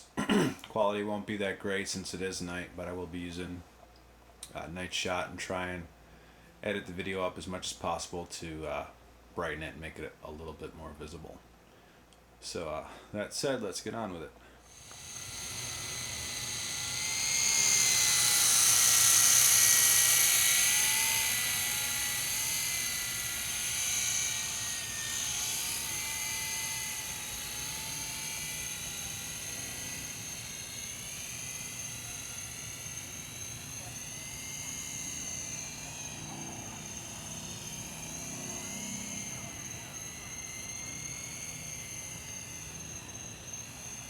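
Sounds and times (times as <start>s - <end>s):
rc helicopter motor whine: 14.6s - 44.0s.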